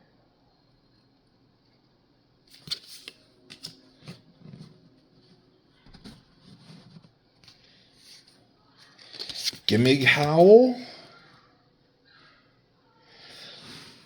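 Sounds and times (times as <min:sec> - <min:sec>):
trading cards clicking and rustling: 0:02.5 - 0:04.8, 0:09.0 - 0:10.7.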